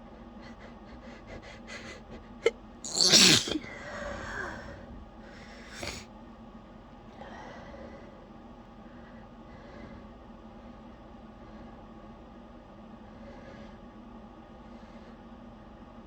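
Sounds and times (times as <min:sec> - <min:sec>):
woman sneezing loudly: 0:02.9 - 0:03.8
soft voiced breath: 0:03.6 - 0:06.1, 0:07.2 - 0:11.9.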